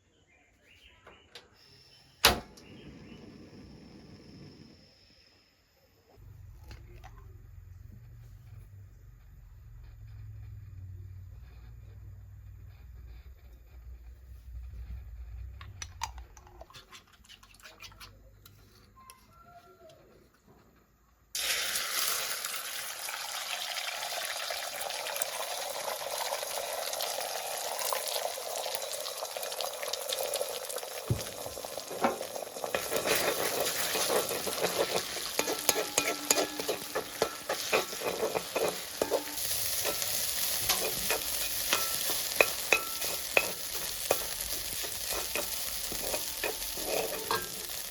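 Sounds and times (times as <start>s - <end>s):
food sizzling in hot oil: 21.4s - 47.9s
spatula scraping pan: 31.1s - 47.9s.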